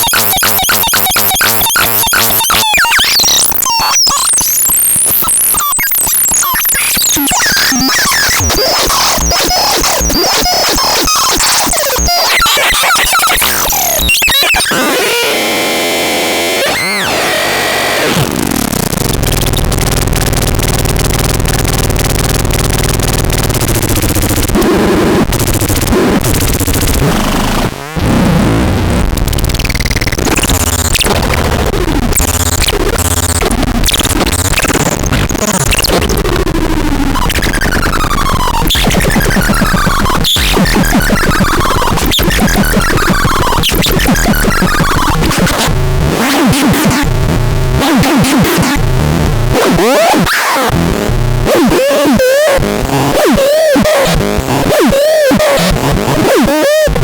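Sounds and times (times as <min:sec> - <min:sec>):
harsh electronic noise music: 0:00.0 - 0:57.0.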